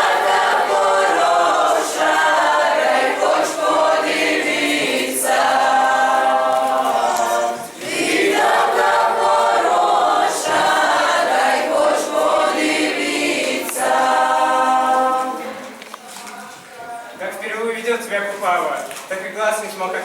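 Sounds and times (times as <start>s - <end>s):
group singing in chorus: 0.0s - 15.9s.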